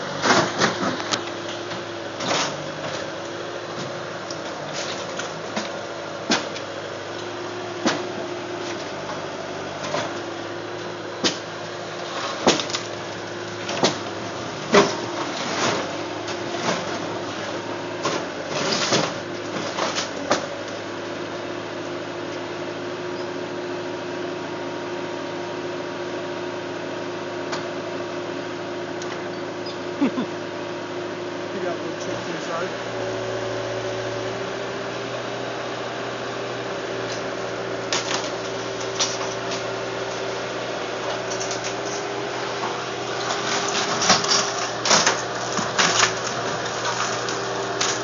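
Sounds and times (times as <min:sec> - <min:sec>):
mechanical hum: 0:00.0 - 0:48.0.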